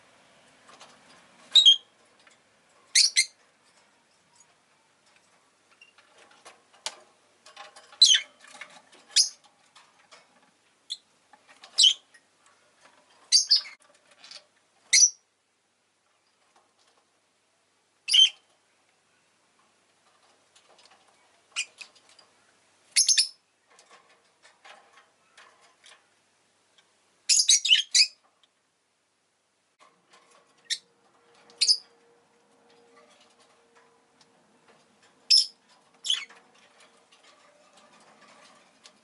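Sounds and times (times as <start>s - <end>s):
lovebirds shrill chirps: 1.6s - 1.9s, 2.9s - 3.4s, 8.0s - 8.3s, 9.2s - 9.4s, 11.8s - 12.0s, 13.3s - 13.8s, 14.9s - 15.2s, 18.1s - 18.4s, 23.0s - 23.4s, 27.3s - 28.2s, 31.6s - 31.8s, 35.3s - 36.3s.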